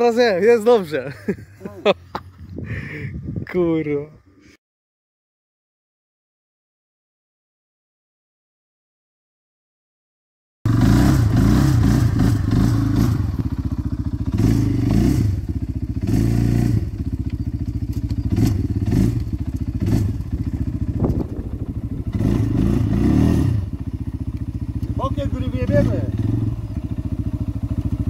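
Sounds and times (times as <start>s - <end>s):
vehicle engine revving: 10.7s - 28.0s.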